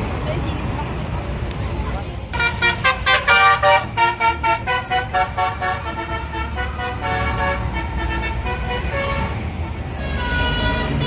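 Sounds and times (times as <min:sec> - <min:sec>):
road traffic rumble: 0:00.0 - 0:11.0
bus musical horn melody: 0:02.4 - 0:11.0.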